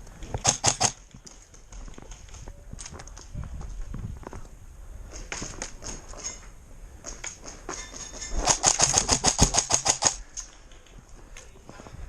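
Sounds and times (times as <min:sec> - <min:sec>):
airsoft gun shots: 0:08.5 - 0:10.2.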